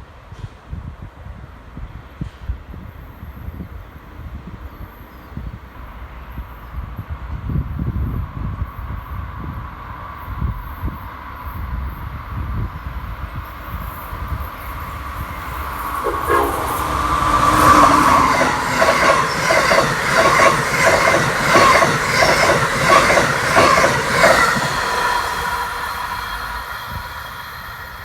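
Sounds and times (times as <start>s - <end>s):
wind rumbling on microphone: 6.7s - 28.0s
train wheels clicking over rail joints: 14.4s - 26.4s.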